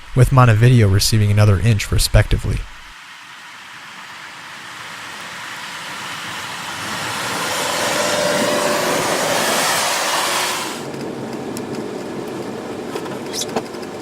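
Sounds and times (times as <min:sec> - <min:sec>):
road vehicle rushing: 0:03.8 - 0:14.0.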